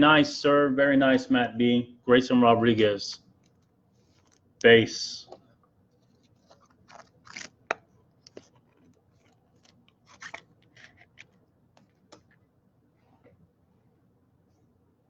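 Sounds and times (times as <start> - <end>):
cards sliding against each other: 8.3 - 12.3.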